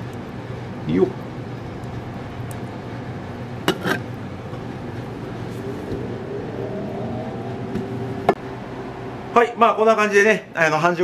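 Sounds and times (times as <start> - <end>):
steady background hum: 0.0 - 11.0
faint rising tone: 4.5 - 10.0.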